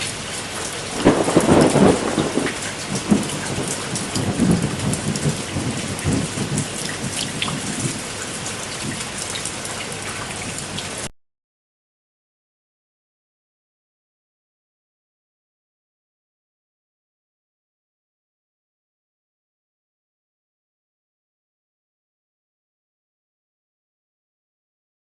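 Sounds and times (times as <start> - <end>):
rain falling: 0.0 - 11.1
raindrops ticking close by: 0.0 - 11.1.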